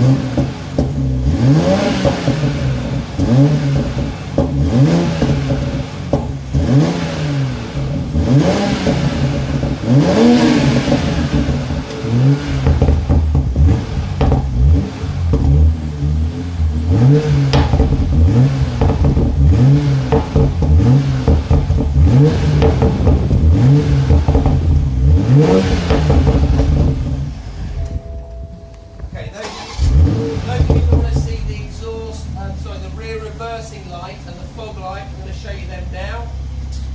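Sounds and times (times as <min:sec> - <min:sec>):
car engine revving: 0:00.0 - 0:36.9.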